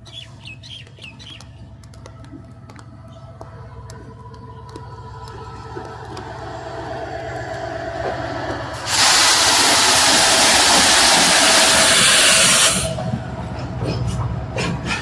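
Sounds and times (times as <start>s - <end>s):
low rumble: 1.4s - 14.9s
train passing with rushing hiss: 6.2s - 15.0s.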